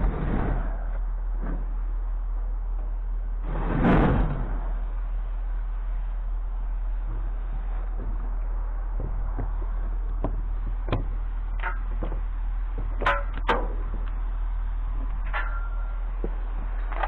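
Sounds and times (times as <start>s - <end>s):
steady low hum: 0.0s - 17.0s
scrap metal clanking: 11.5s - 14.1s, 15.0s - 17.0s.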